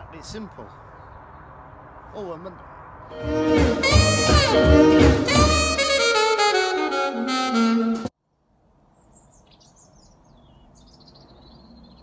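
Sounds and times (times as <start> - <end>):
saxophone-led music: 3.1 - 8.1.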